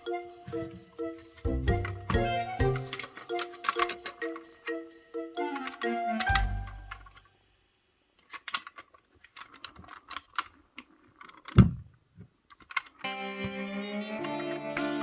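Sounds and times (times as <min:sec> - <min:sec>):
music: 0:00.0 - 0:07.1, 0:13.1 - 0:15.0.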